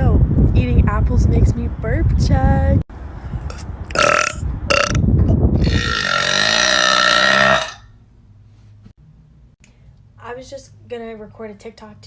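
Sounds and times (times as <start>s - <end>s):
woman burping: 5.6s - 7.8s.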